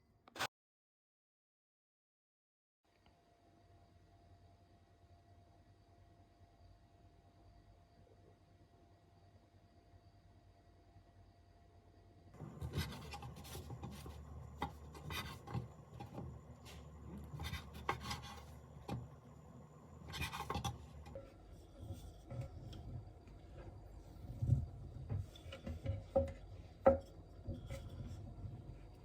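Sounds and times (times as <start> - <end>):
rubbing and rustling handling: 12.4 - 26.8.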